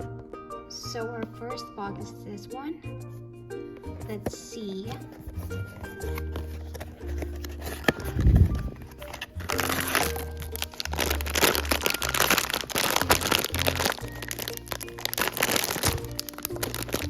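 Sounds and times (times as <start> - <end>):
background music with bass line: 0.0 - 17.0
packaging crackling and crinkling: 5.6 - 17.0.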